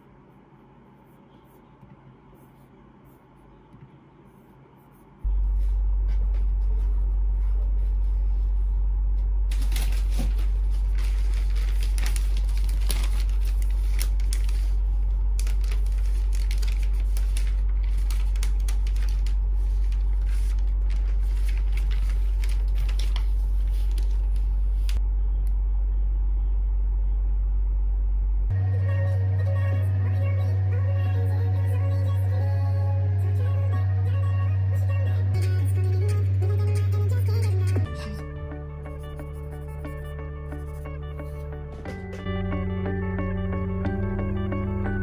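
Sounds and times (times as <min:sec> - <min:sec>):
steady low hum: 0:00.0 - 0:45.0
crackling and rustling: 0:05.4 - 0:25.0.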